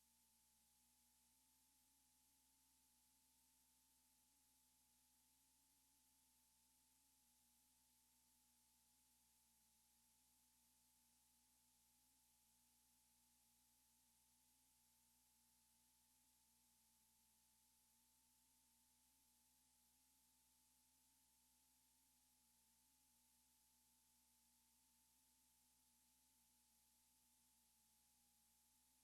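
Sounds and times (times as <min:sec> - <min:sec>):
faint steady tones: 0:00.0 - 0:29.0.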